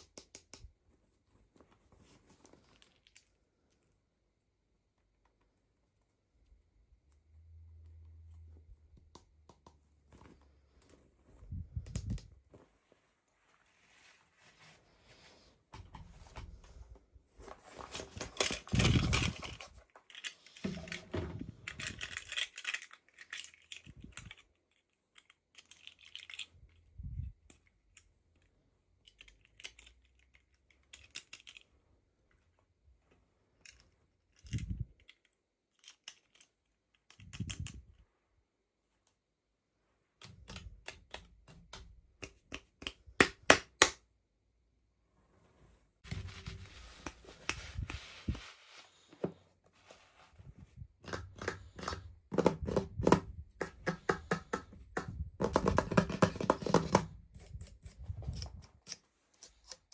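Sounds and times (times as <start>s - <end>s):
clicks and taps: 0.0s - 0.8s, 8.9s - 10.3s, 40.2s - 44.0s, 51.0s - 57.8s.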